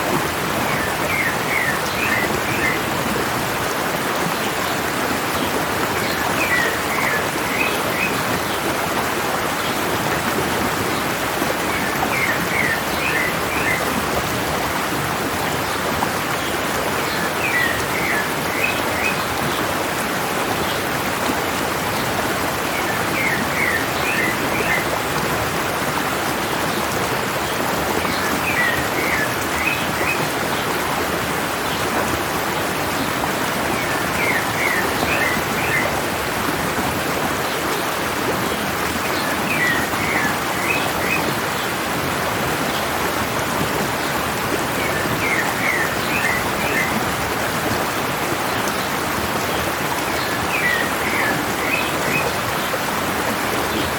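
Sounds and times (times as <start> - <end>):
mountain stream rushing: 0.0 - 53.9
songbird singing: 0.6 - 2.9, 33.7 - 36.0, 50.1 - 52.7.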